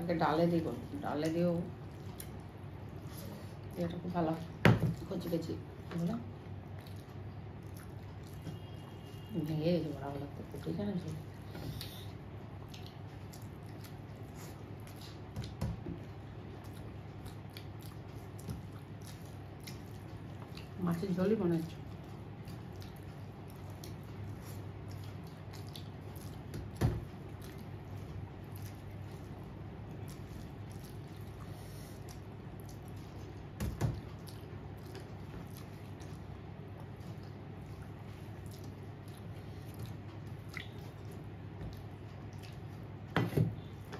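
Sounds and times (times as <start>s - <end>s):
person chewing: 6.6s - 9.3s, 11.3s - 20.8s, 21.8s - 26.5s, 27.1s - 43.9s.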